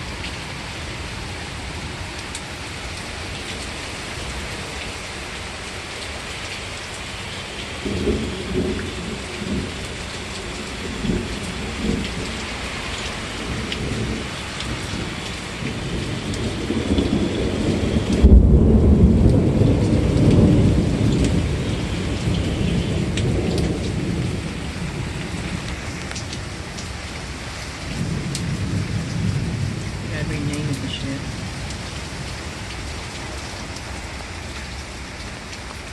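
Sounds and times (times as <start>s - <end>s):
steady rain falling: 0.0s - 35.9s
loud thunderclap: 7.8s - 9.7s, 13.4s - 25.6s, 27.9s - 31.6s
rolling thunder: 7.8s - 32.4s.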